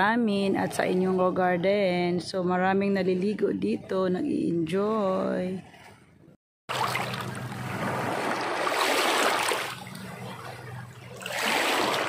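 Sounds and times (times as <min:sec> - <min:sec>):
small waves washing on shore: 0:06.7 - 0:12.0.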